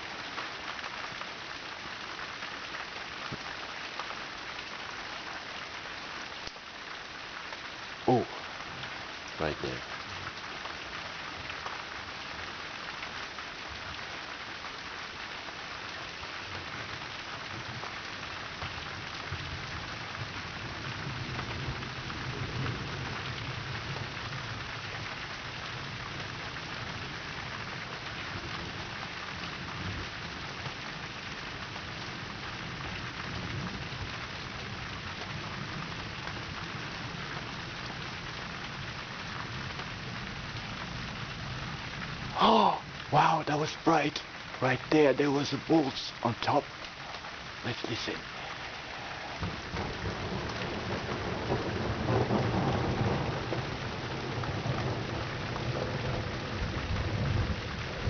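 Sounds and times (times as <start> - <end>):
steady rain falling: 0.0 - 58.0
thunder rumbling: 48.5 - 58.0.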